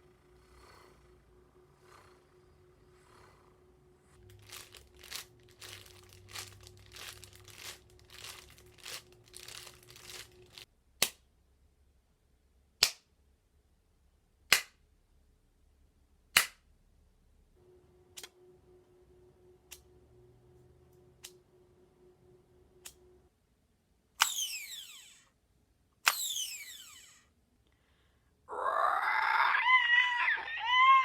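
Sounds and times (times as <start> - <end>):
uneven foley noises: 0.0 - 10.7.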